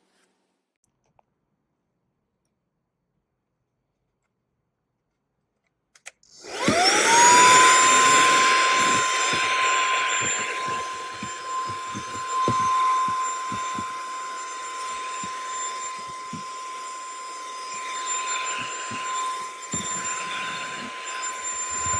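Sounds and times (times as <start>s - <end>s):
handheld vacuum motor whine: 6.3s - 21.9s.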